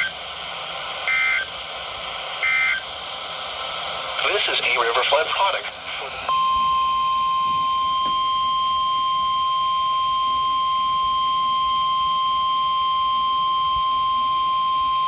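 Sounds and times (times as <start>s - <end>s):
steady emergency alert tone: 1.1s - 1.5s, 2.4s - 2.9s, 4.2s - 15.0s.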